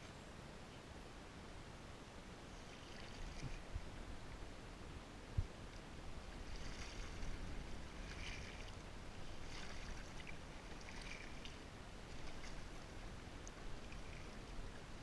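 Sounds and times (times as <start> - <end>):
steady low rumble: 0.0 - 15.0
paddle splashing in water: 6.3 - 15.0.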